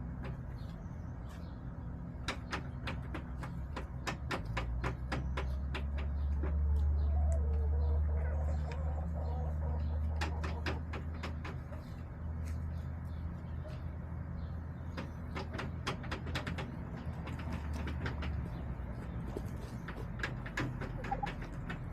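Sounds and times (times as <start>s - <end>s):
faint hen sounds: 5.7s - 14.9s, 16.8s - 21.9s.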